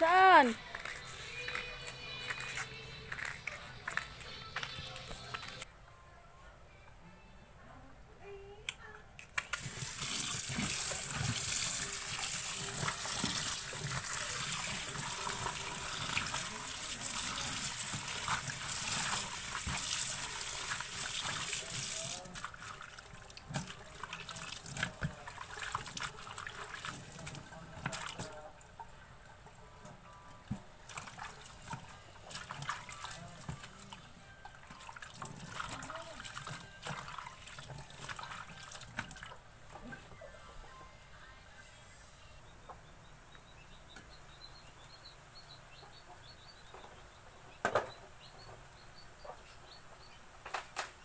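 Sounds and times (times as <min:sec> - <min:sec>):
tap water gushing: 0:09.4 - 0:39.9
water splashing and trickling: 0:09.4 - 0:40.0.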